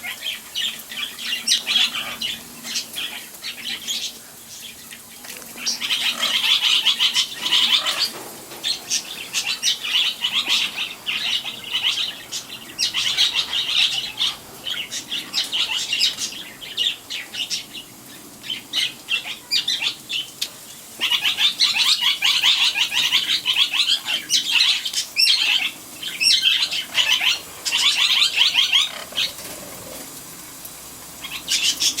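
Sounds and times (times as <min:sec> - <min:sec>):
parrot squawking: 0:05.6 - 0:17.7, 0:21.0 - 0:29.7
parrot wings flapping: 0:28.9 - 0:30.2.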